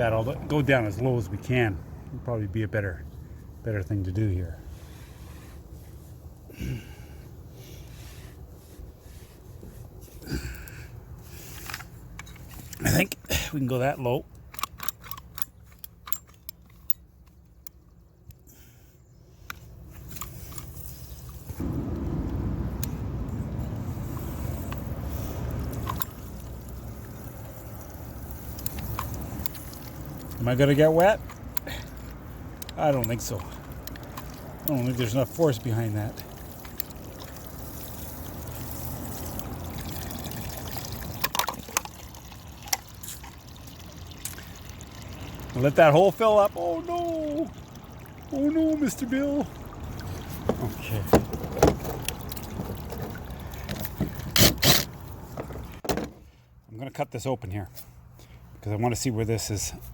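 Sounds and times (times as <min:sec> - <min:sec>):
water pouring from pipe: 0:23.8 - 0:54.4.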